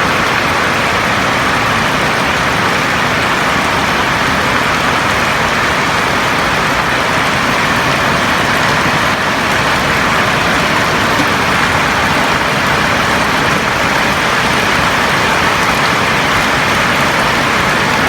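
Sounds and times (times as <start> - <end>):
heavy rain on a roof: 0.0 - 18.0.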